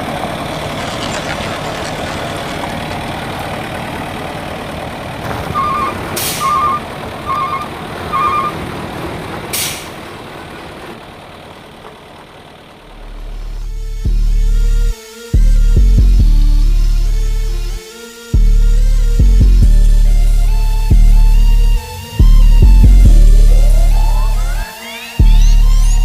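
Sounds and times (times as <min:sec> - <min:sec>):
truck engine running: 0:00.0 - 0:26.0
air brakes hissing: 0:06.1 - 0:06.8, 0:09.4 - 0:10.1.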